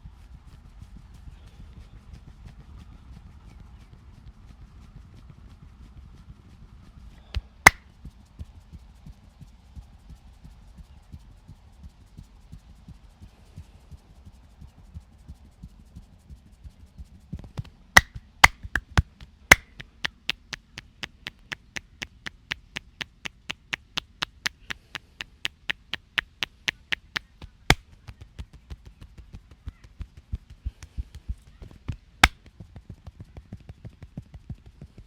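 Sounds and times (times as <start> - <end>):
hands tapping: 18.4 - 27.7.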